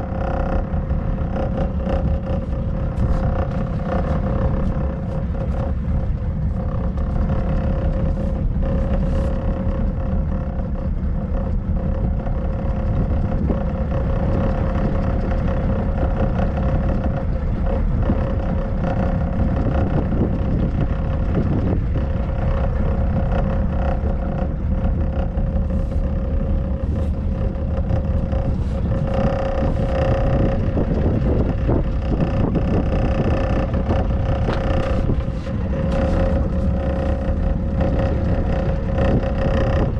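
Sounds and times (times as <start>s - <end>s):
boat engine droning with whine: 0.0s - 39.9s.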